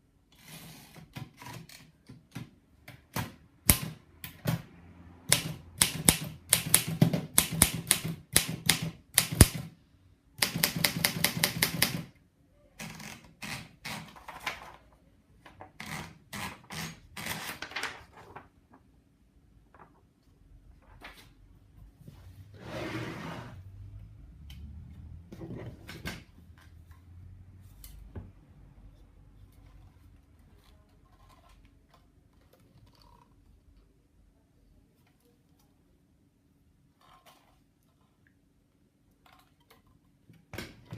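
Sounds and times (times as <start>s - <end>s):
rustling scrape: 22.0s - 23.8s.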